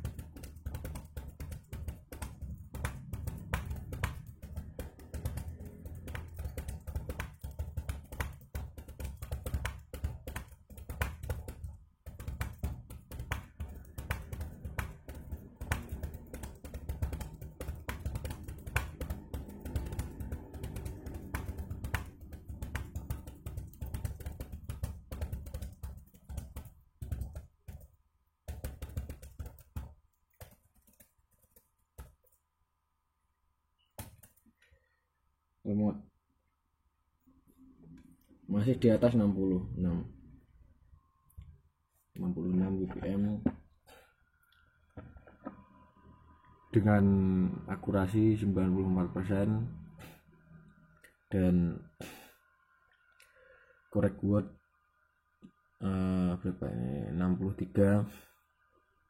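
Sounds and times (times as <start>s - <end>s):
fast typing on keyboard: 0.0s - 32.4s, 34.0s - 34.5s.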